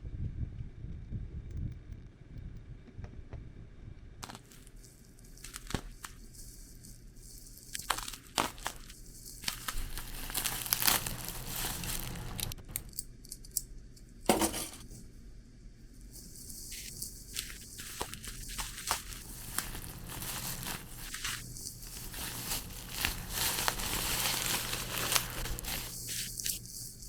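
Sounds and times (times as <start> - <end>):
packaging crinkling and tearing: 4.2 - 13.0, 16.3 - 27.0.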